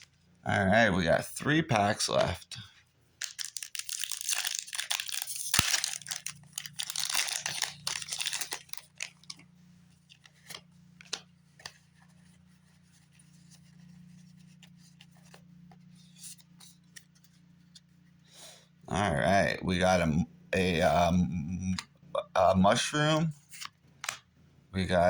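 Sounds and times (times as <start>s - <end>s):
cards clicking and rustling: 1.8s - 2.4s, 3.2s - 17.9s, 23.4s - 24.3s
foil wrapper tearing and crinkling: 3.2s - 9.4s.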